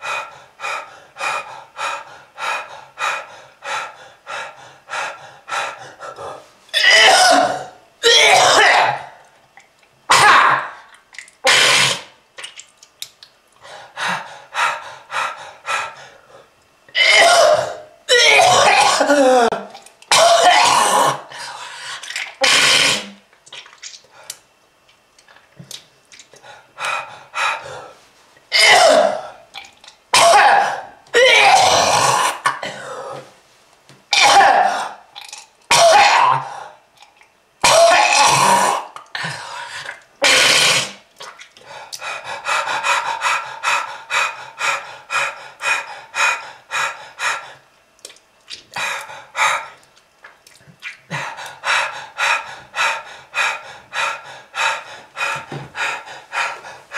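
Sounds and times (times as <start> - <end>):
person coughing: 6.8 - 9.1, 17.0 - 21.2, 28.5 - 29.2, 30.2 - 33.1.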